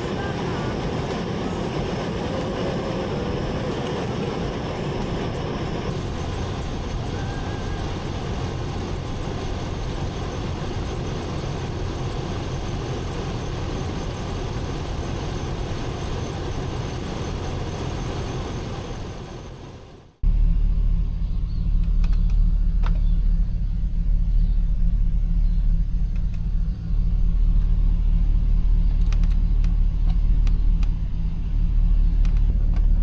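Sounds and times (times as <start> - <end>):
vehicle noise with low rumble: 18.7 - 33.0.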